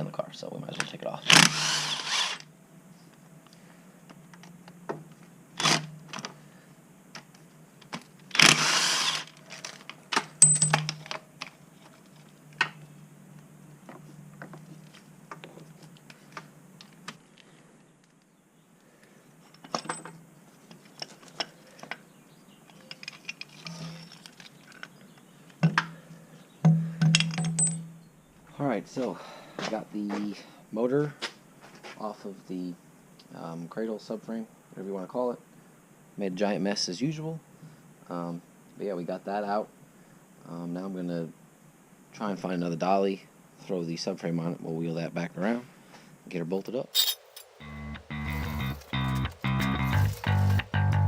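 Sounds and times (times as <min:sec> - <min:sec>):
rasping burst: 0:01.3 - 0:02.4
tools clinking against metal: 0:10.4 - 0:11.2, 0:26.7 - 0:27.9, 0:46.9 - 0:47.6.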